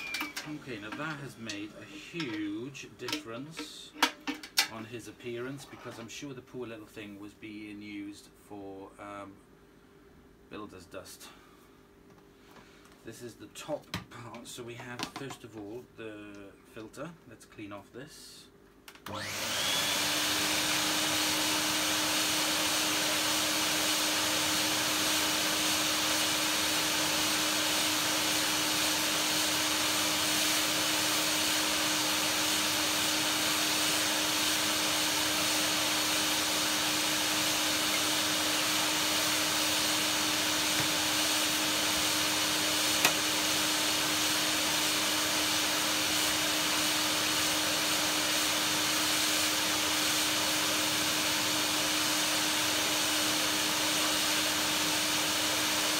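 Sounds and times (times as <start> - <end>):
vacuum cleaner running: 0.0 - 4.4, 19.0 - 55.9.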